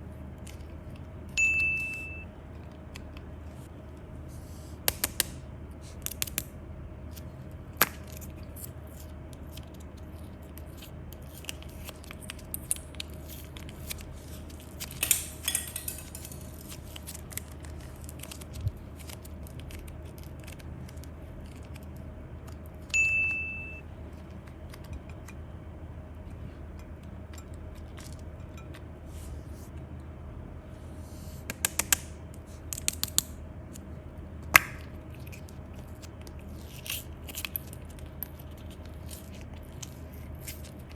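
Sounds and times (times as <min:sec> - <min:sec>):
steady low hum: 0:00.0 - 0:40.9
short high beep: 0:01.4 - 0:02.2, 0:23.0 - 0:23.8.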